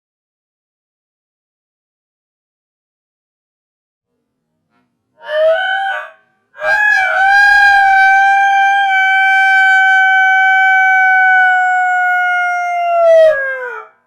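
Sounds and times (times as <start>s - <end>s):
slowed rooster crow: 5.2s - 14.0s.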